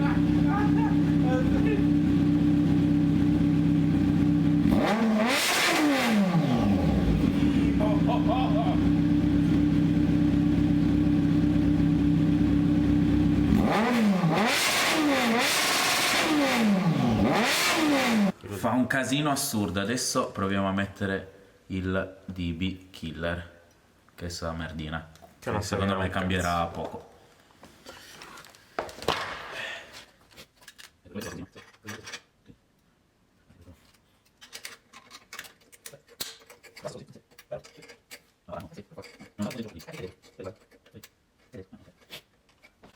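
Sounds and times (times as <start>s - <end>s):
motorcycle engine revving: 0.0s - 18.4s.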